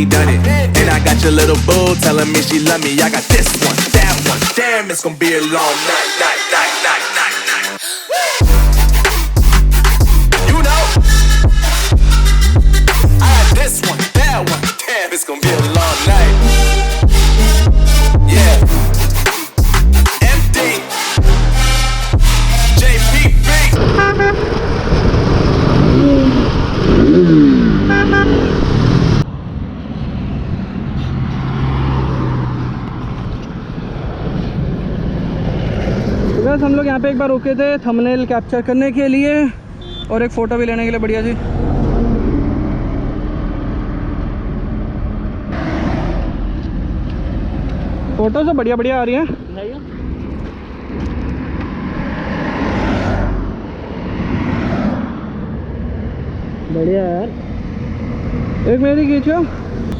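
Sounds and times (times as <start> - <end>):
car horns: 20.5 - 24.6, 27.6 - 28.6, 39.8 - 40.3
vehicle engines: 21.3 - 59.9.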